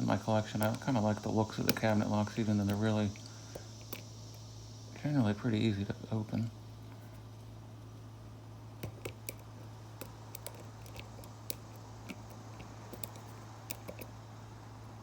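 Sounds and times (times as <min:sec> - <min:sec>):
steady low hum: 0:00.0 - 0:15.0
lock pick clicking: 0:00.6 - 0:00.9, 0:01.5 - 0:04.4, 0:08.8 - 0:14.1.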